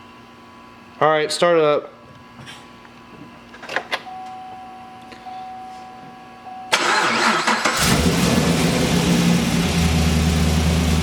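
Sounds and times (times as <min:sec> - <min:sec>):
starter motor cranking: 0:06.8 - 0:08.2
car engine idling: 0:06.8 - 0:11.0.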